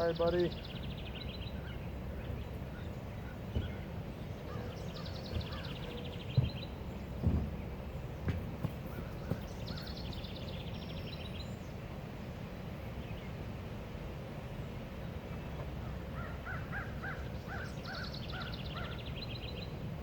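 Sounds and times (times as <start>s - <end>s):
harsh bird calls: 0.0s - 7.3s, 8.0s - 11.6s, 15.3s - 19.8s.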